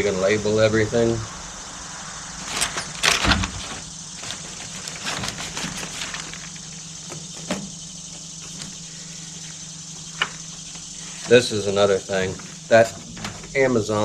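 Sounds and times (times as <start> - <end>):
steady low hum: 0.0 - 14.0
rustling of packaging: 2.4 - 7.2.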